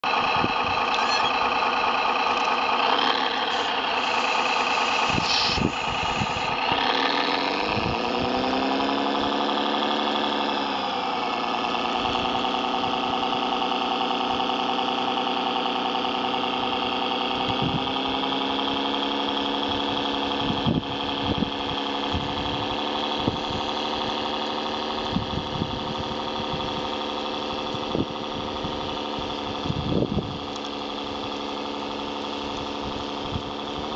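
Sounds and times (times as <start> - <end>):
model bulldozer engine: 0.0 - 33.9.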